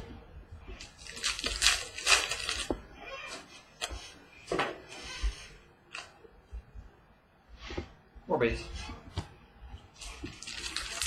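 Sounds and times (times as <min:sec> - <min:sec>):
trading cards rustling: 0:00.8 - 0:02.8, 0:10.0 - 0:11.0.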